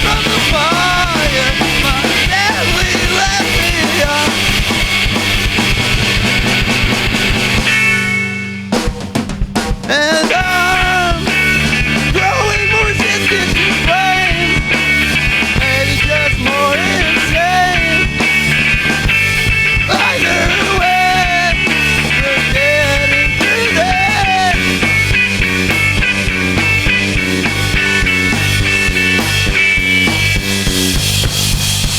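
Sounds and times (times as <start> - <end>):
punk rock band playing live: 0.0 - 31.9.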